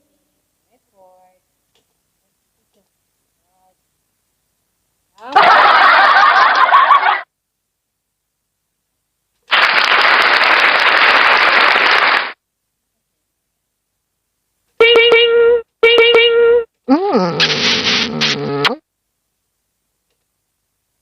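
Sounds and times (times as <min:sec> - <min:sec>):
wavering pitched sound effect: 0:16.9 - 0:18.8
steady noise: 0:17.3 - 0:18.8.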